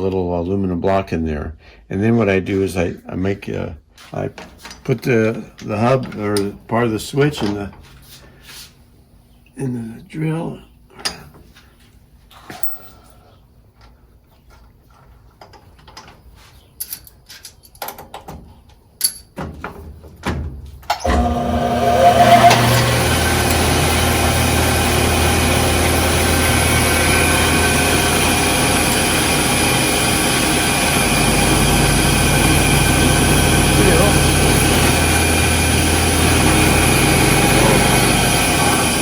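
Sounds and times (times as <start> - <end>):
parts clicking and knocking: 13.8 - 21.2
electric drill motor whining: 21.0 - 39.0.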